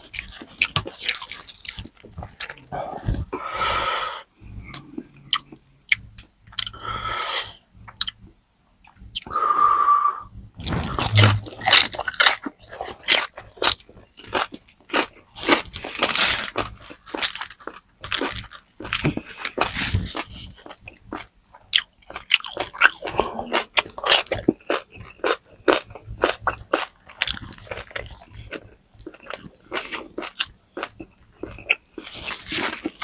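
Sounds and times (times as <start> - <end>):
crunching and chewing: 0.0 - 3.4, 10.6 - 33.0
breathy sounds: 2.5 - 5.6, 6.6 - 7.7, 9.2 - 11.5.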